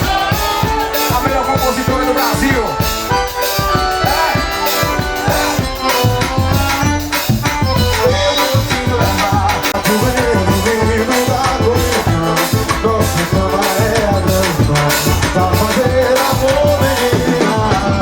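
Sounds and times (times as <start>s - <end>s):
accordion melody: 0.0s - 18.0s
bass: 0.0s - 18.0s.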